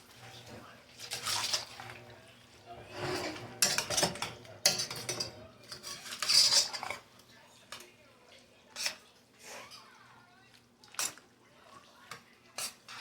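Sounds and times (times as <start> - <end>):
utensil stirring in a pot: 0.0 - 10.2, 10.8 - 13.0
utensil clinking against pot: 3.1 - 7.0.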